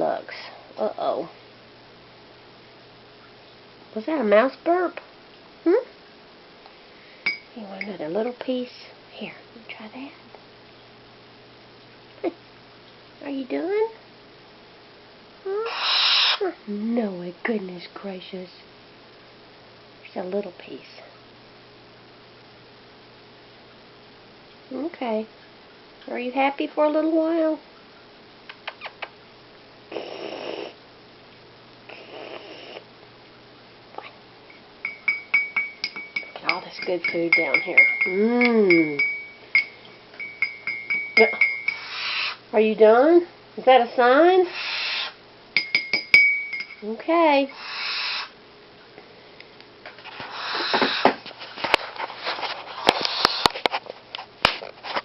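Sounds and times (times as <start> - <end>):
owl chick hissing snore calls: 15.5 - 16.6, 29.9 - 30.8, 31.9 - 32.9, 41.7 - 42.4, 44.4 - 45.2, 47.5 - 48.4, 50.2 - 51.2, 52.9 - 53.6
rustling: 49.9 - 55.0.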